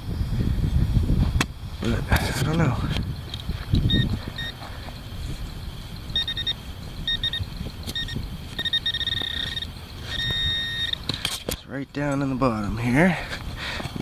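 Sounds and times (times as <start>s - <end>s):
metal detector beeps: 3.3s - 11.4s.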